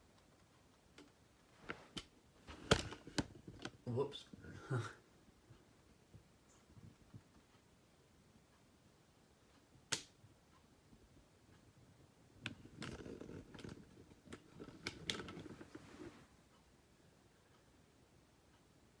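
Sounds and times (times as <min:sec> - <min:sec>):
plastic parts clicking and rattling: 0:12.4 - 0:15.8.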